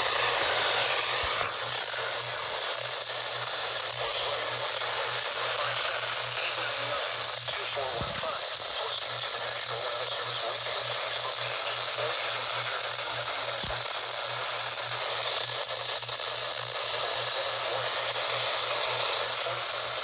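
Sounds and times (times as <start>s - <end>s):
radio static hiss: 0.0s - 20.0s
click: 13.6s - 13.8s.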